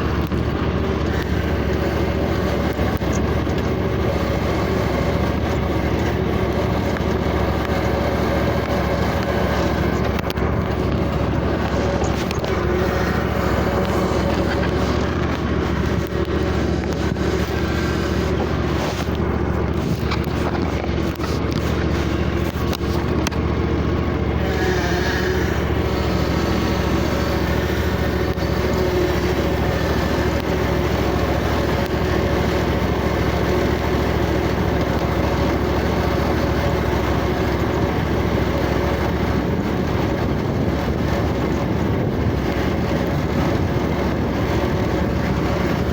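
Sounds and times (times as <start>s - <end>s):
riding lawnmower engine running: 0.0s - 45.9s.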